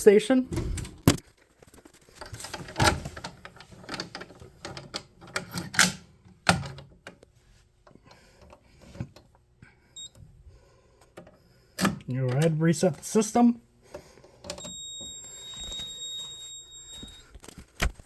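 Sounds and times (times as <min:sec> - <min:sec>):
fire alarm pull station clicks: 0:14.5 - 0:17.3.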